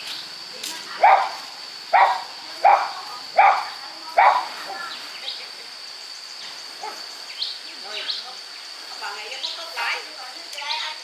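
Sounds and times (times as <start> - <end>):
high insect drone: 0.0 - 11.0
dog barking: 1.0 - 4.6.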